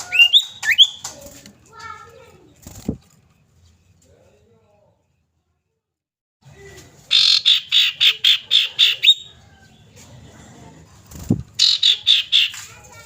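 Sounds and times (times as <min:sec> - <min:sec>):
bird calling harsh notes: 0:07.1 - 0:09.3, 0:11.6 - 0:12.7.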